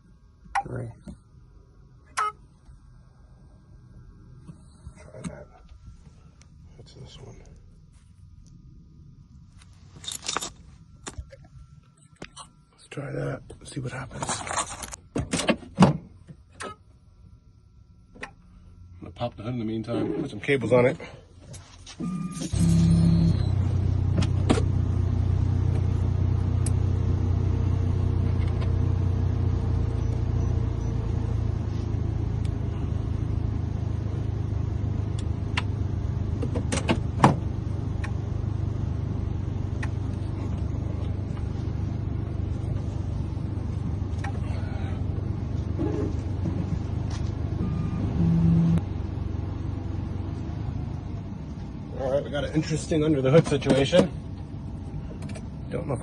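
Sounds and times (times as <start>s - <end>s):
vehicle engine droning: 21.9s - 56.0s.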